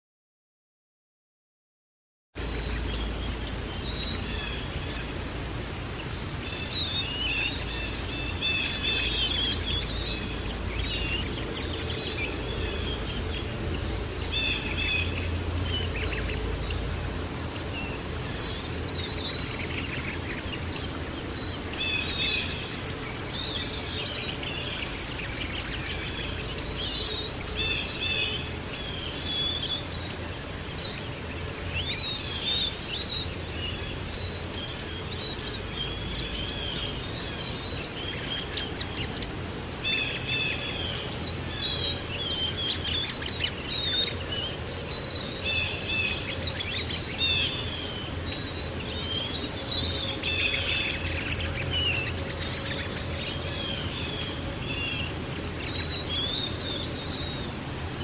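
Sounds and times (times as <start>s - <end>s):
songbirds chirping: 2.4s - 58.0s.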